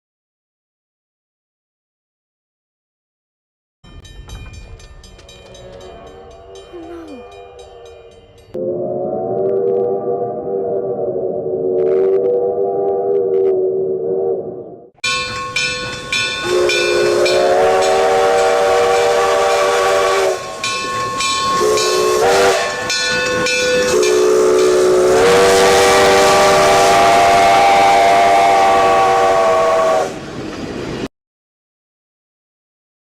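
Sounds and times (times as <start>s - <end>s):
steam locomotive whistle: 8.6s - 13.6s, 16.2s - 30.2s.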